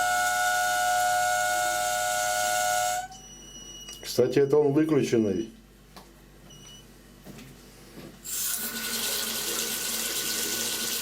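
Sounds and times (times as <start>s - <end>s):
water rushing from tap: 8.3s - 11.0s.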